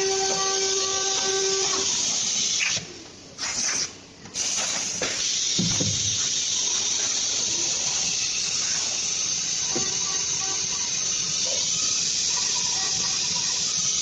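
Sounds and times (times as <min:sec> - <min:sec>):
cnc machine hissing: 0:00.0 - 0:02.6.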